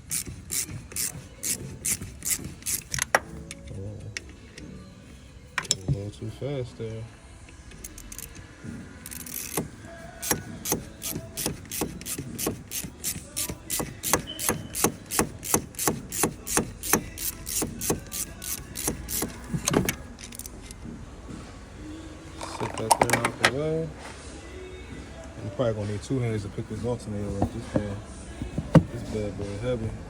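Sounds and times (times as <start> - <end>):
ratchet clicking: 0.0 - 3.6, 7.8 - 8.4, 9.0 - 20.6.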